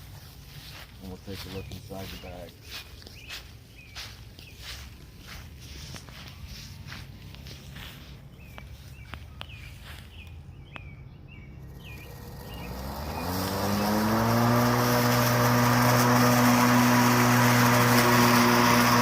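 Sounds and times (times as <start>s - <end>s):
electric lawn mower whine: 11.1s - 19.0s.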